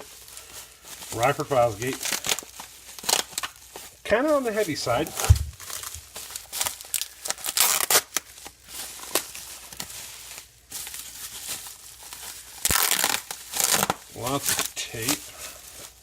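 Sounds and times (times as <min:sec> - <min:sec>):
packing tape tearing: 0:00.0 - 0:16.0
wrapping crinkling: 0:00.0 - 0:16.0
low thump: 0:05.2 - 0:05.7.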